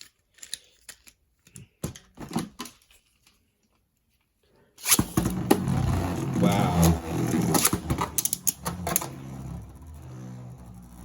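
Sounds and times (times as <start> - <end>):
spinning tops launched: 4.8 - 11.0.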